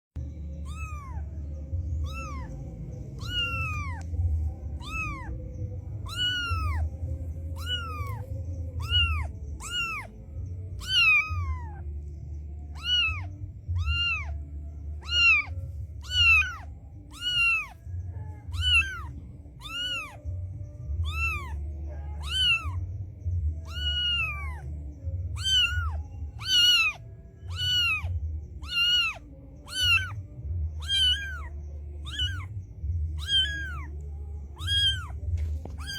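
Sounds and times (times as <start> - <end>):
steady low rumble: 0.2 - 35.9
cat meowing: 0.5 - 11.8, 12.7 - 22.9, 23.6 - 30.2, 30.8 - 35.9.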